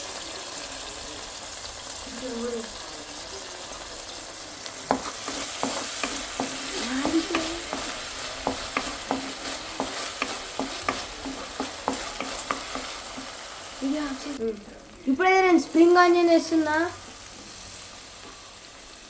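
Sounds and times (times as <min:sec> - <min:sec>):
vegetables sizzling: 0:00.0 - 0:19.0
spatula knocking against pan: 0:04.9 - 0:13.4.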